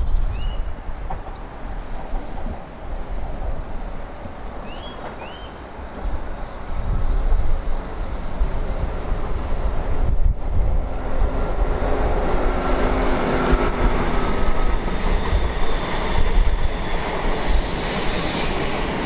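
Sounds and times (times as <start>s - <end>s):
strong wind buffeting microphone: 0.0s - 19.0s
train rumble: 0.0s - 19.0s
bird chirps: 4.6s - 5.6s.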